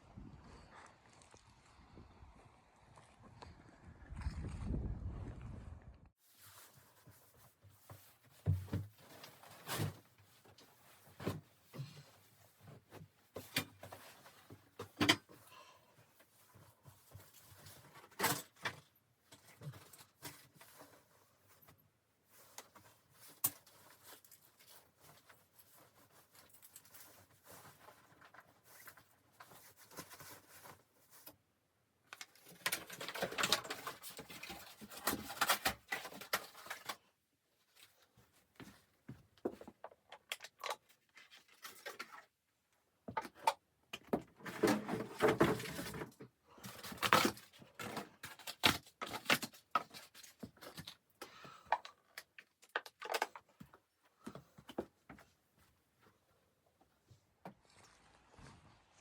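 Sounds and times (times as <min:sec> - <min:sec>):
rustling: 0:06.2 - 0:31.5.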